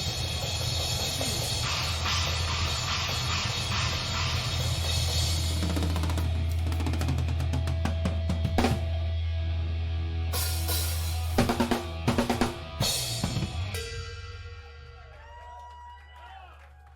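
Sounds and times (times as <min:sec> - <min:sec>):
loud cymbal crashes: 0:00.0 - 0:06.4, 0:10.4 - 0:15.2
snare and bass drum hits: 0:11.4 - 0:13.6.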